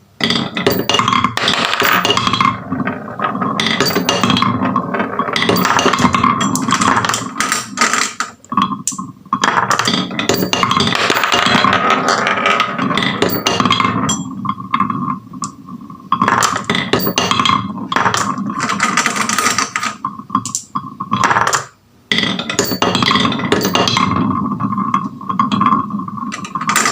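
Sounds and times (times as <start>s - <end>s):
marbles rolling on wooden track: 0.2s - 26.9s.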